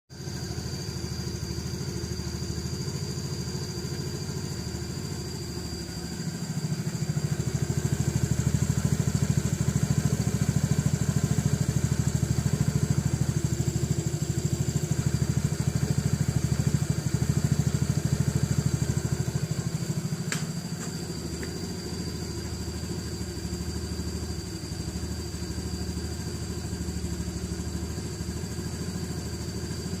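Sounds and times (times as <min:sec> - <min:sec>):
noisy belt transmission: 0:00.1 - 0:30.0
scooter engine running: 0:00.2 - 0:30.0
sharp click: 0:20.2 - 0:21.6.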